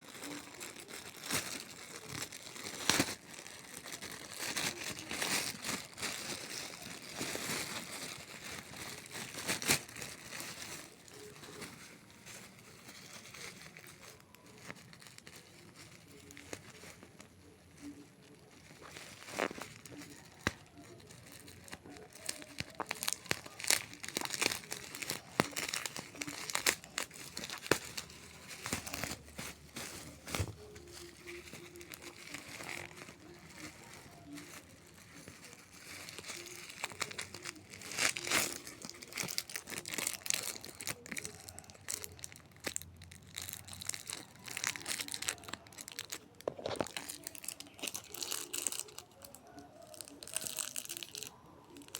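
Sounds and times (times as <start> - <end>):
packaging crinkling and tearing: 0.0 - 51.9.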